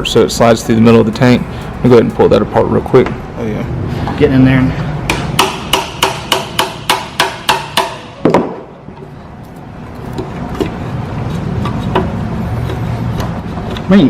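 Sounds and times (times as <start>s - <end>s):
hammer strikes on metal: 5.0s - 8.7s.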